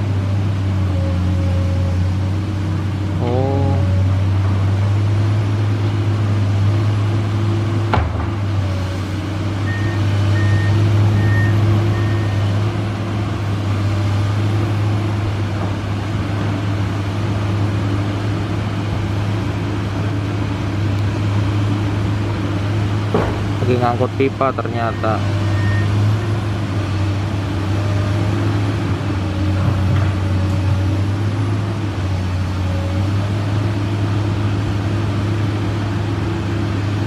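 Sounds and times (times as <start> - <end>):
excavator diesel engine droning: 0.0 - 37.0
short high beeps: 24.9 - 25.9.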